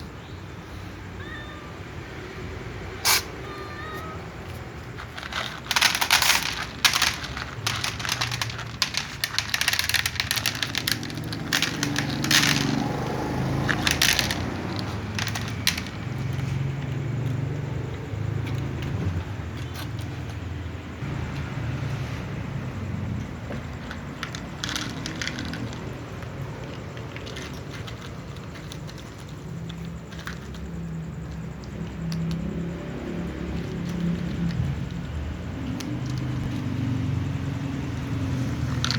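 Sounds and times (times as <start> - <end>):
cats crunching dry food: 4.4 - 16.6, 23.8 - 36.6.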